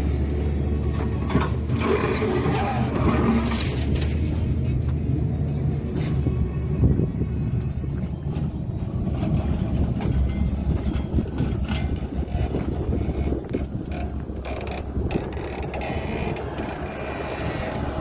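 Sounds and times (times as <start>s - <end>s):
heavy diesel engine running: 0.0s - 18.0s
knocks and clanks: 8.0s - 18.0s.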